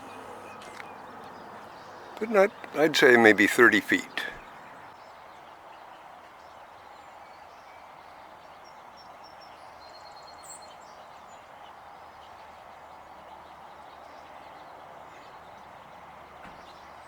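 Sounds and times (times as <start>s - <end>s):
outdoor background hiss: 0.0s - 5.0s.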